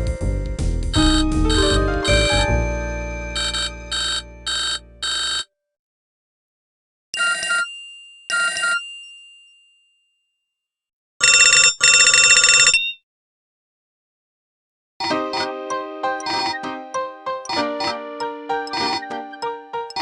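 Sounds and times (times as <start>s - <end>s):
chiming notes: 1.0s - 4.5s
electronic ringtone melody: 1.0s - 5.4s, 15.0s - 20.0s.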